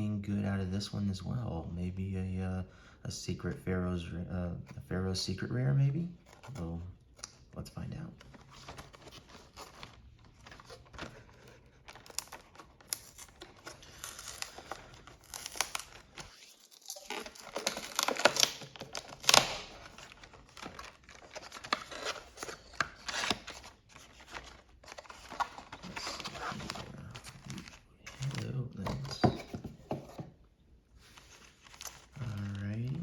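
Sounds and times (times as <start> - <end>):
packaging tearing and crinkling: 8.2 - 28.6.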